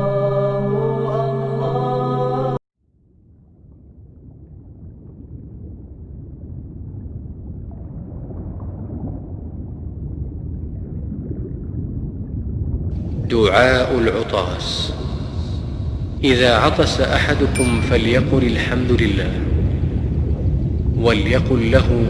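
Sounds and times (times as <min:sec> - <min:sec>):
low rumbling noise: 0:03.7 - 0:22.0
chanted music: 0:17.6 - 0:19.1.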